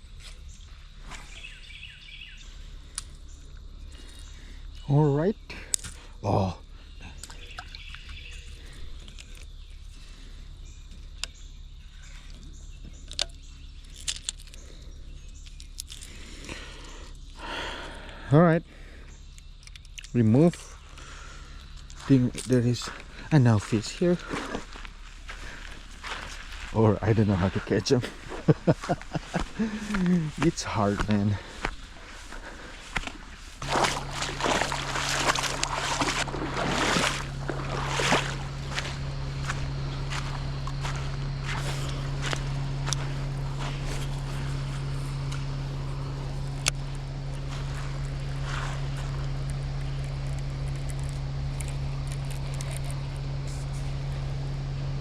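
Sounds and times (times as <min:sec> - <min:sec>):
low outdoor rumble: 0:00.0 - 0:55.0
steady low hum: 0:00.0 - 0:55.0
footsteps sloshing through water: 0:07.1 - 0:10.3, 0:21.8 - 0:52.9.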